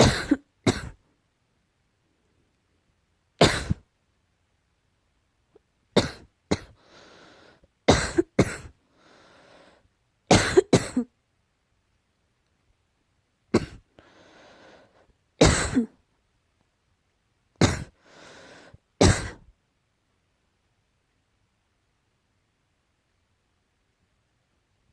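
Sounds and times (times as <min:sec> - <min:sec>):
person coughing: 0:00.0 - 0:01.0, 0:03.4 - 0:03.8, 0:06.0 - 0:06.8, 0:07.9 - 0:08.8, 0:10.3 - 0:11.1, 0:13.6 - 0:13.9, 0:15.4 - 0:16.0, 0:17.6 - 0:18.0, 0:19.0 - 0:19.5
breathy intake of breath: 0:06.8 - 0:07.7, 0:08.9 - 0:09.8, 0:14.0 - 0:15.1, 0:17.9 - 0:18.8.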